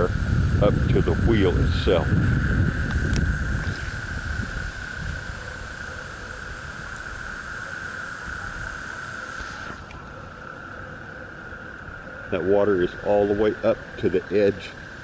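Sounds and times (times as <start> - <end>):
low rumble: 0.0 - 5.4
insects and frogs trilling: 0.0 - 15.0.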